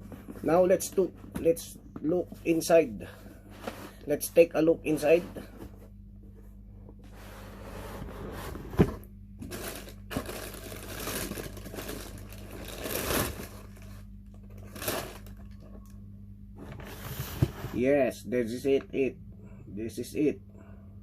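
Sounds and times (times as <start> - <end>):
faint low hum: 0.0 - 21.0
cardboard box rustling and scraping: 4.9 - 14.0, 16.6 - 18.0.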